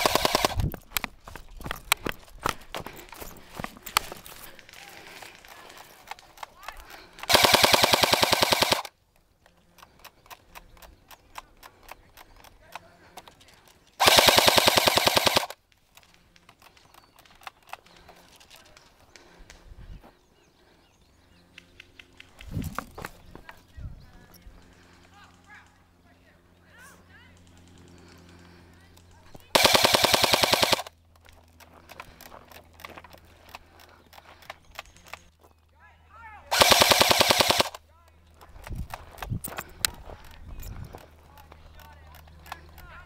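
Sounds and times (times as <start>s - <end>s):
airsoft gun full-auto burst: 0.0s - 0.6s, 6.9s - 8.9s, 14.0s - 15.6s, 29.5s - 30.9s, 36.5s - 37.8s.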